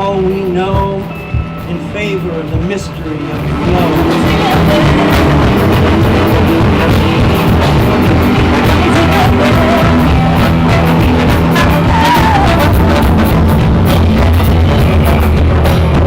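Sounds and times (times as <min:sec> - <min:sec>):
drums with cymbal hits: 0:00.0 - 0:16.0
live rock band playing: 0:00.0 - 0:16.0
wavering pitched melody line: 0:02.2 - 0:14.6.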